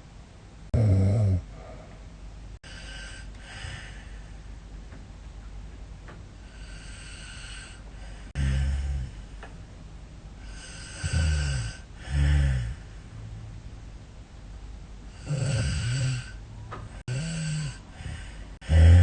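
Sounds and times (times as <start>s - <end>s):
woman snoring: 0.8s - 1.8s, 6.5s - 9.2s, 10.4s - 12.8s, 15.1s - 16.4s, 17.0s - 19.0s
quiet breathing: 1.4s - 4.6s, 6.4s - 9.6s, 10.4s - 13.3s, 15.1s - 19.0s.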